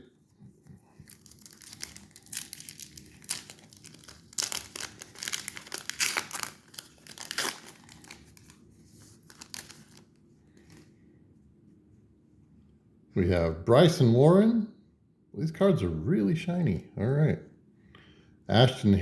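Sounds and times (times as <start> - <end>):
foil wrapper tearing and crinkling: 1.0 - 10.2.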